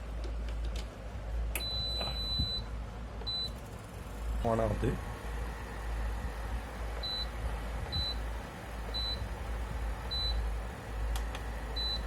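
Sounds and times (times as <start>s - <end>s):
stove beeping: 1.5s - 3.6s, 5.9s - 12.0s.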